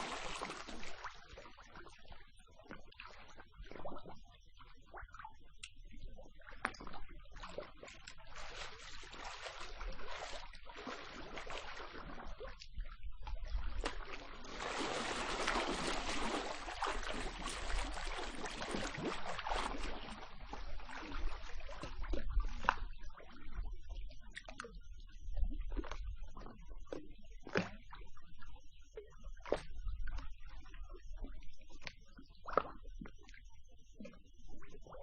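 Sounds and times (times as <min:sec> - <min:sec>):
water splashing from swimming: 0:00.0 - 0:05.8, 0:06.4 - 0:23.7, 0:25.7 - 0:28.0, 0:31.1 - 0:33.4.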